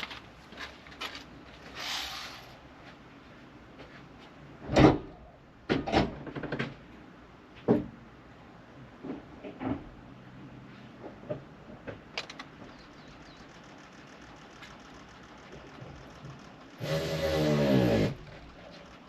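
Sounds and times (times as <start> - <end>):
metallic clicks and knocks: 11.3 - 12.7.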